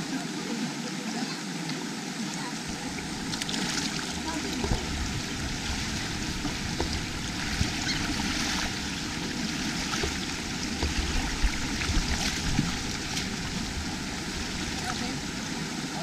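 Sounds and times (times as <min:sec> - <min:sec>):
steady rushing noise: 0:02.6 - 0:16.0.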